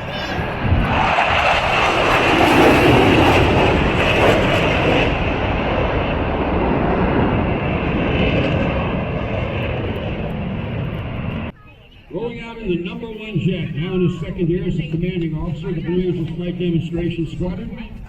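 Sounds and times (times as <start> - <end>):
passing jet noise: 0.0 - 11.6.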